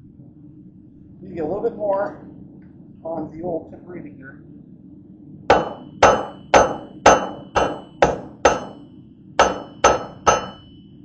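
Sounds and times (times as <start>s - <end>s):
anvil ringing: 5.5s - 10.8s
hammer striking metal on anvil: 5.5s - 10.8s.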